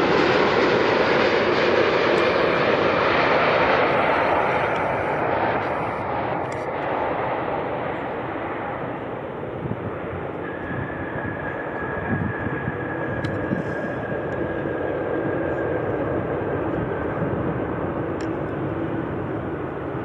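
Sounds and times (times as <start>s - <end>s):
jet engines rushing and whining: 0.0s - 20.0s.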